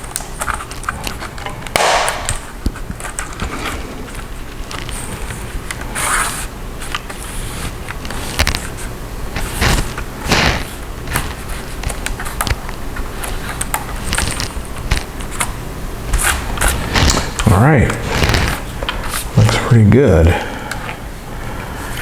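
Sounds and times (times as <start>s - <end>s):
steady low hum: 0.0s - 22.0s
plastic clips snapping and scraping: 9.4s - 15.5s, 16.1s - 19.6s.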